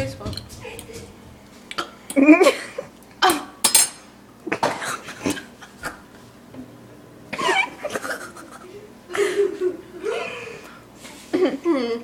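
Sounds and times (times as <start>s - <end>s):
forks clinking against dishes: 3.6s - 4.0s.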